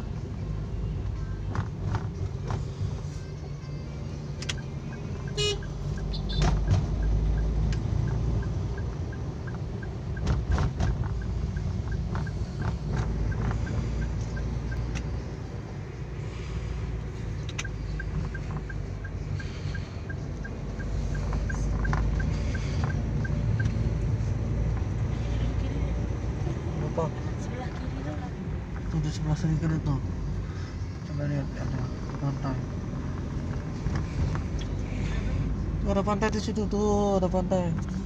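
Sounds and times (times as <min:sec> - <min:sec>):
car engine and road rumble: 0:00.0 - 0:38.0.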